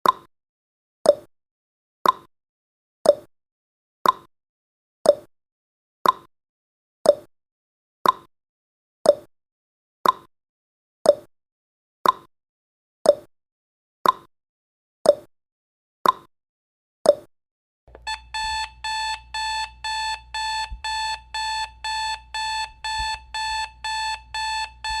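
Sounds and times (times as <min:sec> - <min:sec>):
alarm clock beeping: 0:17.9 - 0:25.0
timer ticking: 0:17.9 - 0:25.0.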